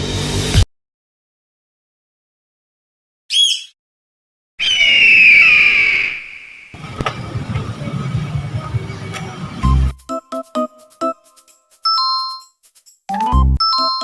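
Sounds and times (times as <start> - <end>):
descending whistle-like squeal: 4.6 - 6.8.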